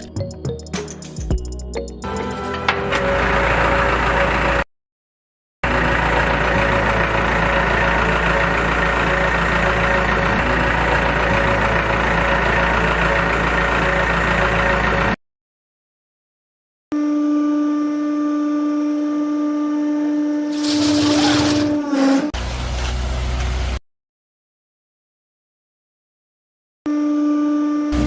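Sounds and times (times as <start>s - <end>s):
motor running: 5.6s - 15.2s.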